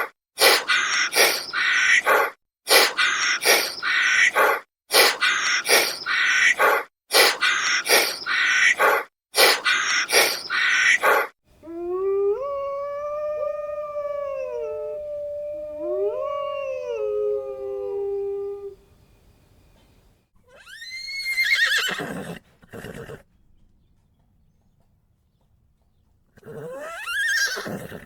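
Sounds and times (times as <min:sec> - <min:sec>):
dog barking: 0:00.0 - 0:11.3
dog howling: 0:11.0 - 0:18.8.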